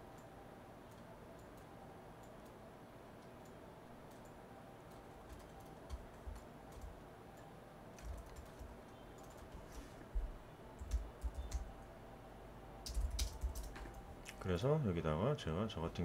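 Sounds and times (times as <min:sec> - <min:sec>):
keyboard and mouse clicks: 0:12.9 - 0:14.0.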